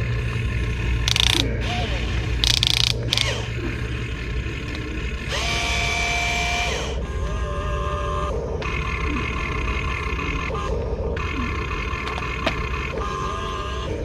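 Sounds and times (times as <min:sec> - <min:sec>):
gear and track rattling: 0:00.0 - 0:05.4
electric motors whining: 0:00.0 - 0:14.0.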